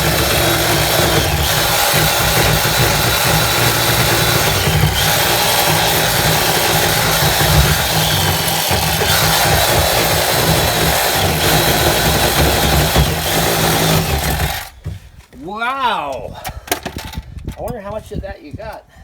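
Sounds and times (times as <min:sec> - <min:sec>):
power tool cutting wood: 0:00.0 - 0:14.8.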